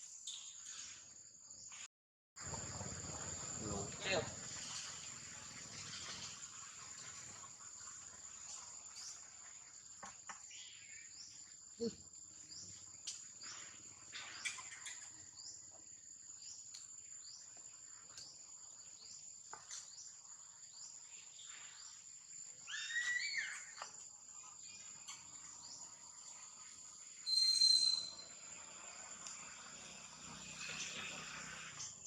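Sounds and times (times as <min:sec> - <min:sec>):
insects buzzing and chirping: 0:00.0 - 0:32.0
shrill high-pitched call: 0:22.7 - 0:23.7, 0:27.2 - 0:28.2.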